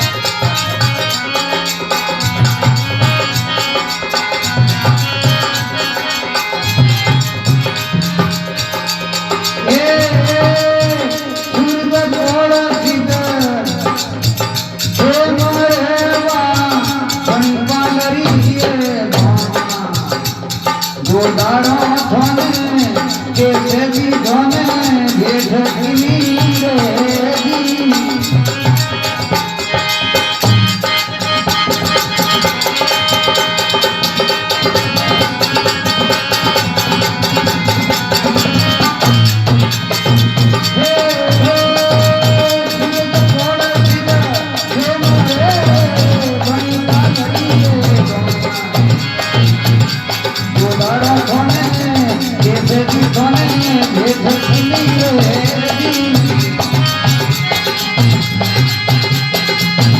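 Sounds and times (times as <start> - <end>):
drums and rattles beat: 0.0 - 59.9
person singing: 8.9 - 30.3, 31.2 - 59.9.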